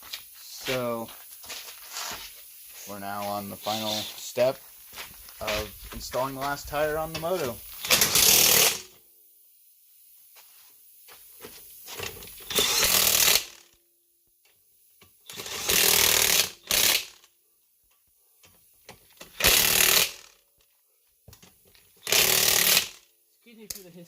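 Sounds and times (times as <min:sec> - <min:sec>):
pneumatic impact wrench bursts: 0:07.6 - 0:09.0, 0:12.0 - 0:13.7, 0:15.3 - 0:17.3, 0:19.2 - 0:20.4, 0:22.0 - 0:23.0.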